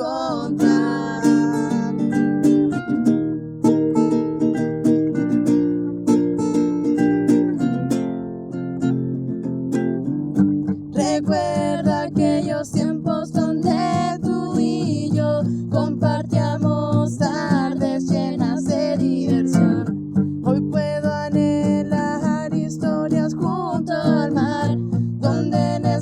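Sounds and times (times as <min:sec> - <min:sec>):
person singing: 0:00.0 - 0:02.2, 0:10.9 - 0:26.0
acoustic guitar strumming: 0:00.0 - 0:26.0.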